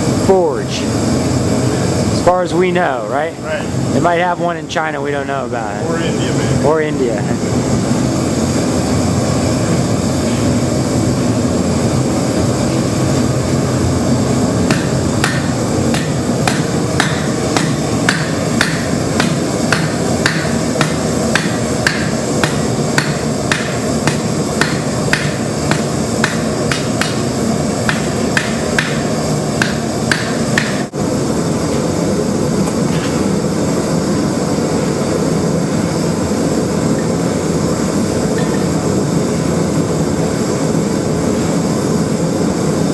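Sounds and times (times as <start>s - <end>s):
forge burner rushing: 0.0s - 42.9s
hammer striking steel on anvil: 14.7s - 30.9s.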